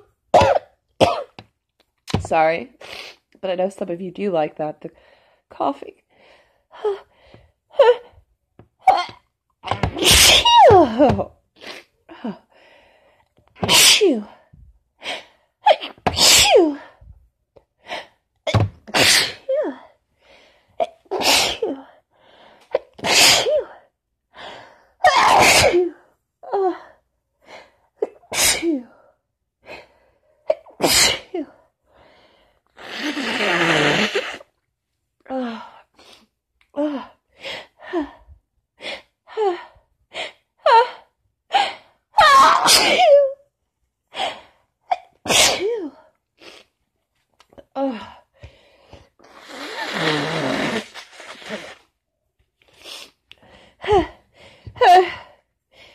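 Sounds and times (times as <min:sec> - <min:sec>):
woman sneezing: 0:09.8 - 0:11.1, 0:13.6 - 0:14.2, 0:15.7 - 0:16.8, 0:18.5 - 0:19.8, 0:21.1 - 0:21.8, 0:23.0 - 0:23.7, 0:25.0 - 0:25.9, 0:28.3 - 0:28.8, 0:42.2 - 0:43.3, 0:45.2 - 0:45.9
woman gasping breaths: 0:12.1 - 0:13.3.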